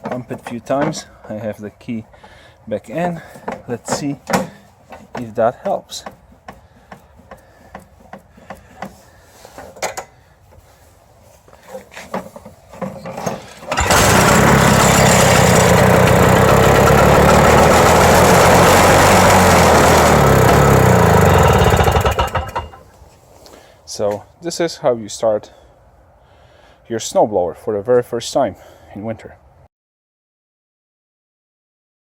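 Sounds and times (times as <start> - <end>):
snowblower engine running: 13.3 - 22.8.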